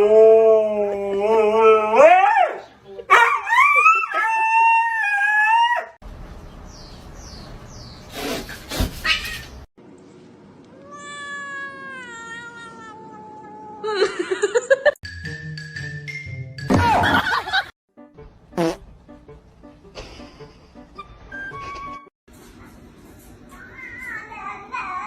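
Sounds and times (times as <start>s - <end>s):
cat meowing: 10.7s - 13.8s.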